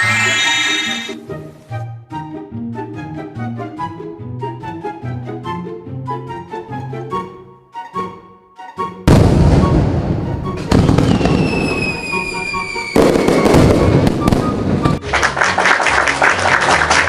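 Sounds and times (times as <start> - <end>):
fireworks bursting: 9.1 - 15.0
firework whistle falling in pitch: 9.2 - 15.0
people clapping: 14.9 - 17.0.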